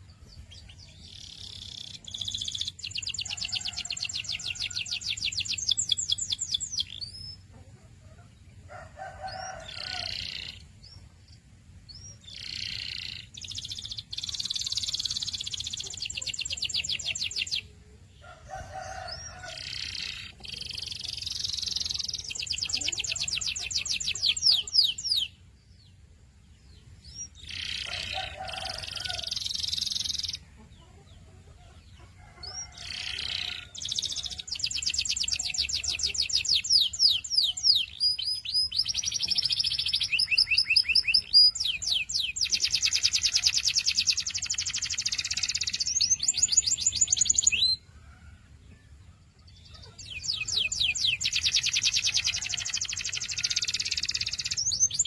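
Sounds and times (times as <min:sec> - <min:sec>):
canary singing with trills: 0:00.0 - 0:48.6, 0:49.2 - 0:55.0.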